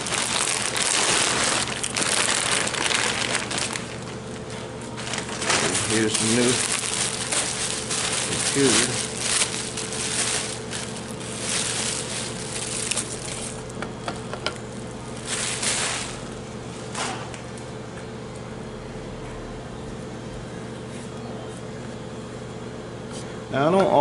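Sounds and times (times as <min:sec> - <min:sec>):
plastic packaging crinkling: 0:00.0 - 0:16.6
steady low hum: 0:00.0 - 0:24.0.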